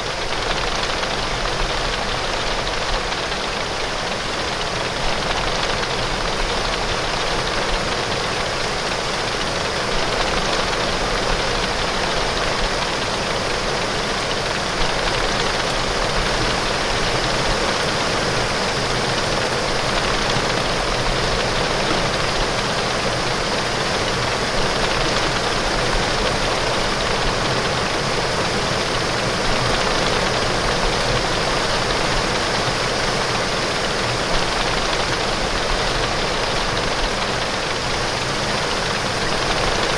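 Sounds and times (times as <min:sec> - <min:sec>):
heavy rain on window glass: 0:00.2 - 0:39.9.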